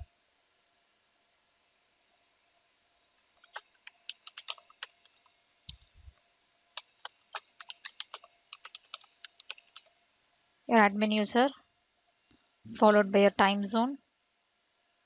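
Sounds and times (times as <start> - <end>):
keyboard key clicks: 3.4 - 5.0, 6.8 - 9.8.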